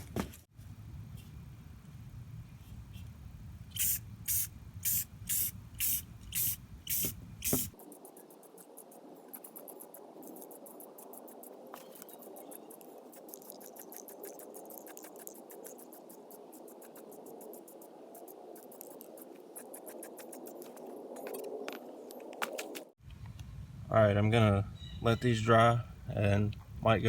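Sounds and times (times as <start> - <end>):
spray paint can hissing: 3.7 - 7.8, 13.2 - 20.6.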